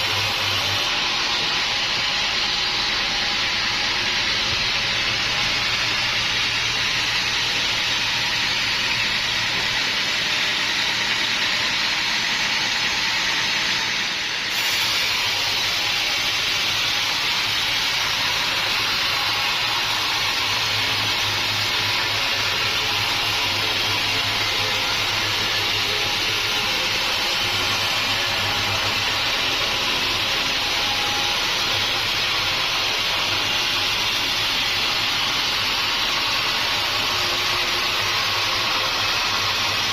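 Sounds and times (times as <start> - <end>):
sawmill machinery hiss: 0.0 - 39.9.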